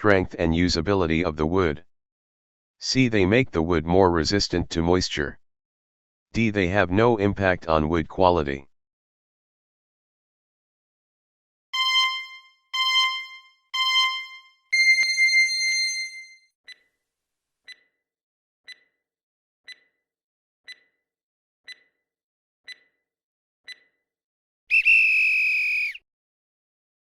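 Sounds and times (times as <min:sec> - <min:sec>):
loud buzzer tone: 0:11.8 - 0:15.4
short electronic beeps: 0:11.8 - 0:16.2
soft timer ticks: 0:16.7 - 0:16.9, 0:17.7 - 0:18.0, 0:18.7 - 0:19.0, 0:19.7 - 0:20.0, 0:20.7 - 0:21.0, 0:21.7 - 0:22.0, 0:22.7 - 0:23.0, 0:23.7 - 0:24.0.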